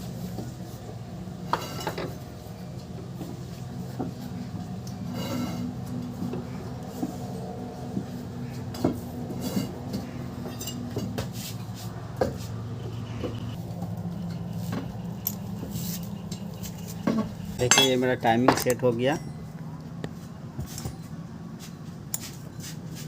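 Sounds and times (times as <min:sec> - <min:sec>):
steady low hum: 0:00.0 - 0:23.0
metallic clinks of tools: 0:17.6 - 0:19.5.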